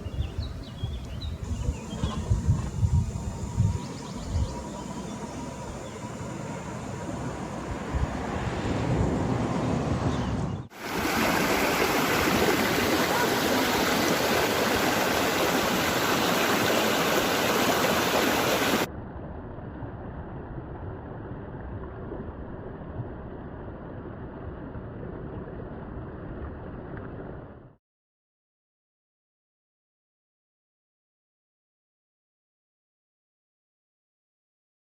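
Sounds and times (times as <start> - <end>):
rushing water of stream: 1.0 - 18.9.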